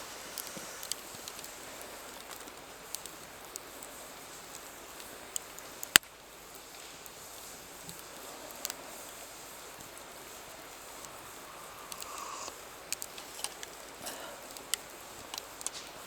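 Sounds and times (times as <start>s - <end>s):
steady hiss: 0.0s - 16.0s
sharp clicks and ticks: 10.8s - 13.7s.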